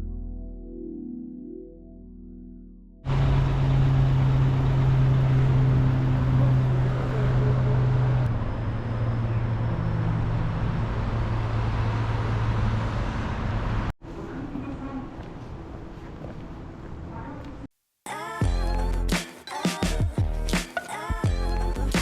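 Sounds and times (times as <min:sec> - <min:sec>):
vehicle engine humming and rumbling: 0:03.1 - 0:14.0.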